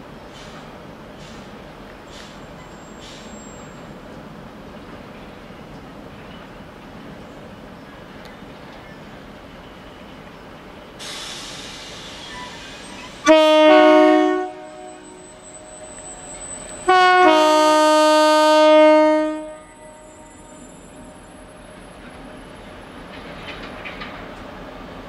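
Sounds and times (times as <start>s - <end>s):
train noise: 0.0s - 25.0s
locomotive horn blasts: 13.2s - 16.0s, 16.8s - 20.7s.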